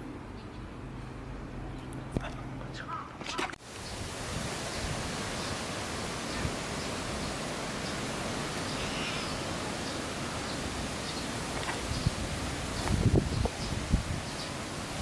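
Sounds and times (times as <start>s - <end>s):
steady rushing noise: 3.6s - 15.0s.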